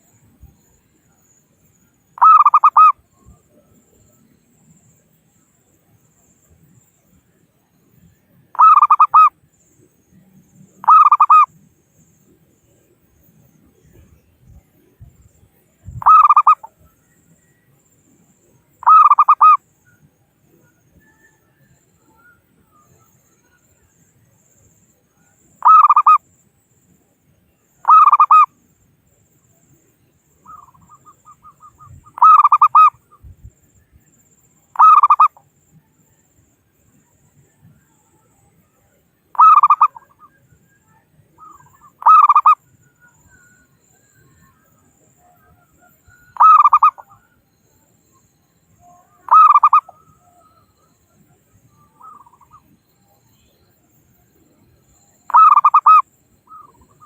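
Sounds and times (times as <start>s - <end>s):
dove cooing: 2.2s - 2.9s, 8.6s - 9.3s, 10.8s - 11.5s, 16.0s - 16.7s, 18.8s - 19.6s, 27.8s - 28.5s, 30.5s - 33.0s, 34.8s - 35.4s, 39.4s - 40.2s, 40.9s - 42.6s, 45.8s - 47.2s, 49.1s - 50.6s, 55.3s - 57.0s.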